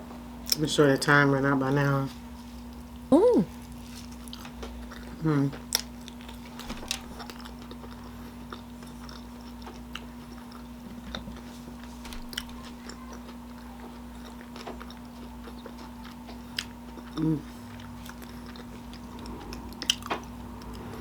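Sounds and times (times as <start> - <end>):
person chewing: 7.2 - 11.5, 12.3 - 20.8
steady low hum: 13.6 - 21.0.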